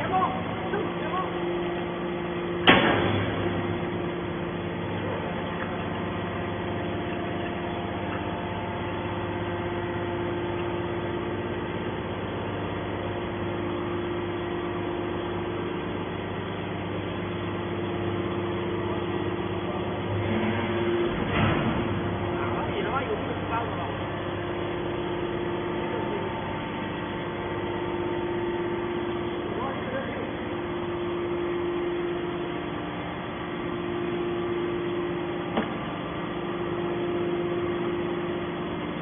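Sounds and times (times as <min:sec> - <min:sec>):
hydraulic baler motor humming: 0:00.0 - 0:39.0.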